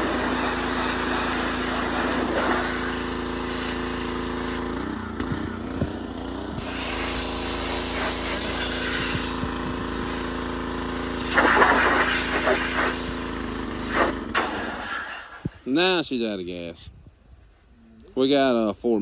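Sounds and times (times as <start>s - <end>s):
water spray hissing: 0.0s - 4.7s, 6.6s - 15.7s
pressure washer engine humming: 0.0s - 15.8s.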